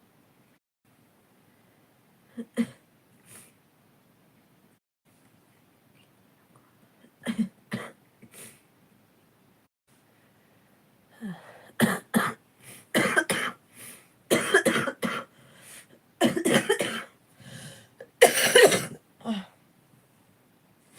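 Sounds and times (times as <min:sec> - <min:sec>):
person coughing: 0:13.0 - 0:13.6, 0:14.3 - 0:15.3, 0:16.2 - 0:17.1, 0:18.2 - 0:19.5.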